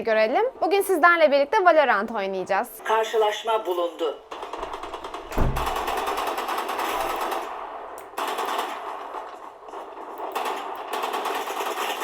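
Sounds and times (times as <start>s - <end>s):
automatic rifle fire: 4.3s - 12.0s.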